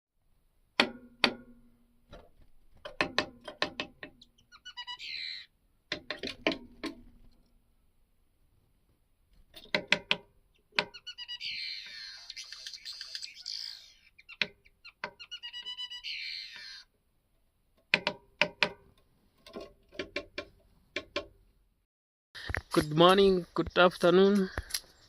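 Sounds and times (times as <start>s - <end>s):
bird chirping: 4.0s - 5.6s, 10.4s - 16.9s.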